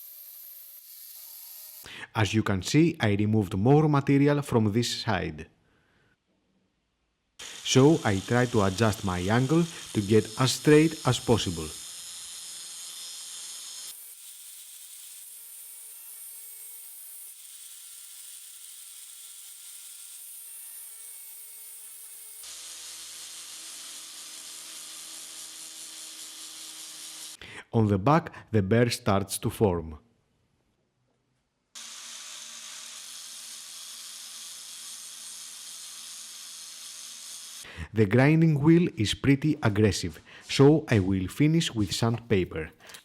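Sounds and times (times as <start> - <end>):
angle grinder grinding steel: 7.4 - 27.4, 31.8 - 37.6.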